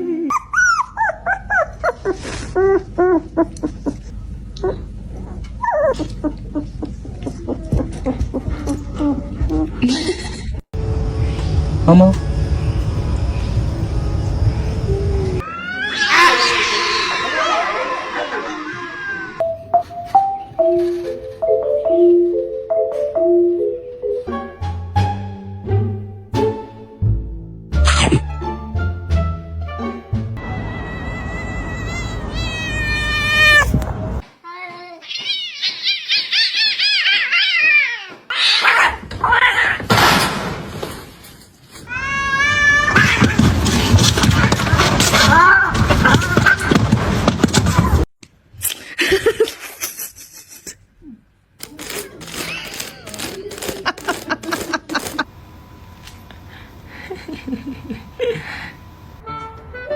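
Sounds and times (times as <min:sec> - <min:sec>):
cat yowling: 0:15.4 - 0:17.8, 0:30.8 - 0:33.8, 0:35.0 - 0:39.8
rapid high-pitched cat cries: 0:15.4 - 0:17.8, 0:30.7 - 0:33.8, 0:34.9 - 0:39.8, 0:41.9 - 0:43.5
people laughing: 0:16.3 - 0:19.4, 0:48.9 - 0:50.9, 0:52.1 - 0:55.3, 0:56.9 - 0:58.8.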